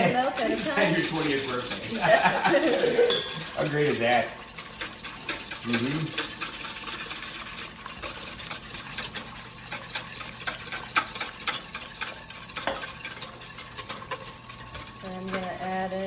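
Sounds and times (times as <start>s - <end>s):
whisk clicking and scraping bowl: 0.0s - 16.0s.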